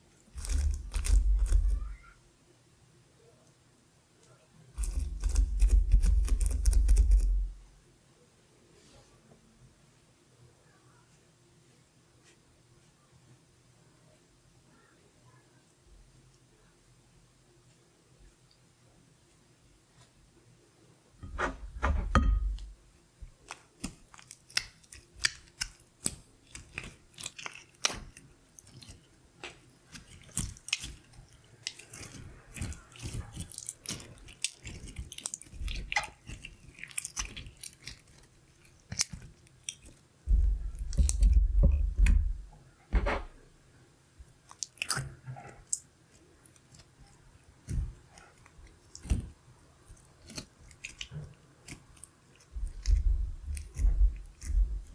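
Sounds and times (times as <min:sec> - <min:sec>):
slime squished by hand: 0:00.4 - 0:02.1, 0:04.8 - 0:07.6.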